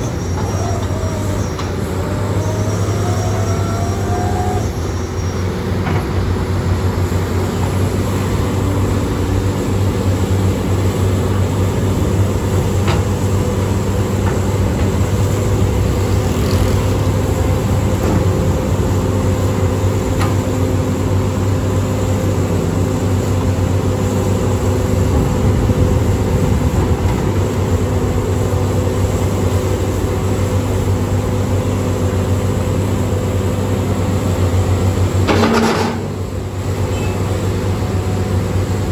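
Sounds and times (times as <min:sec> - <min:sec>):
diesel construction machinery running: 0:00.0 - 0:38.9.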